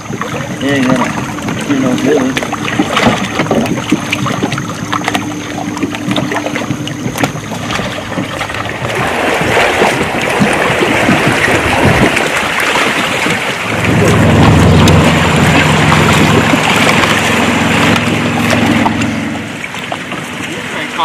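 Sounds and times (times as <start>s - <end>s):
low steady hum: 0.0s - 21.0s
water noise around kayak: 0.0s - 21.0s
wind noise: 6.1s - 19.5s.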